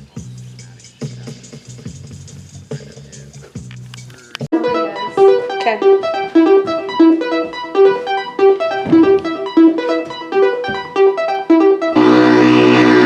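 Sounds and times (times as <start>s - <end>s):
short pitched notes repeating: 4.5s - 13.0s
steady droning chord: 4.6s - 13.0s.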